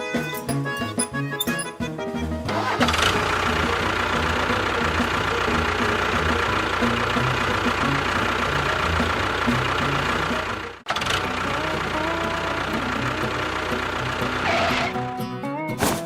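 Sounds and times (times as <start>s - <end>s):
small engine idling with knocking: 2.6s - 15.0s.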